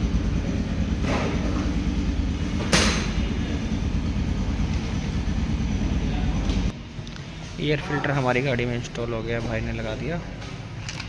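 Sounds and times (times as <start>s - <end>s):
machine rumbling: 0.0s - 8.1s.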